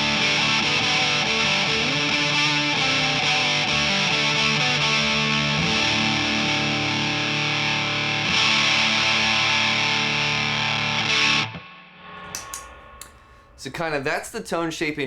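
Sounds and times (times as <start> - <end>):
fuzzed electric guitar chords: 0.0 - 13.5.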